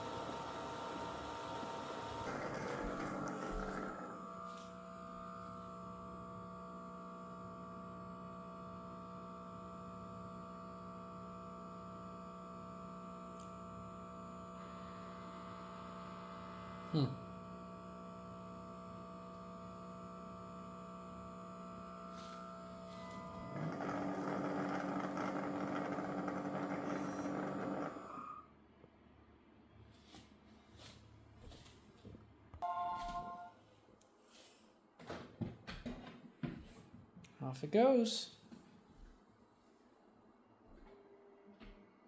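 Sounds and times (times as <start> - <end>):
robot vacuum motor hum: 0.0 - 6.7, 19.8 - 28.4
whirring motor spinning up: 22.2 - 28.4.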